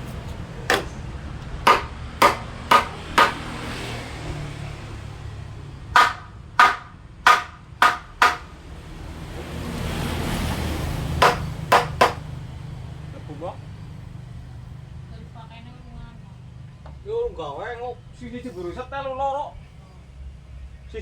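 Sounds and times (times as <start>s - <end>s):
hammer strikes on wood: 0.7s - 1.0s, 1.6s - 3.6s, 6.0s - 8.6s, 11.2s - 12.3s.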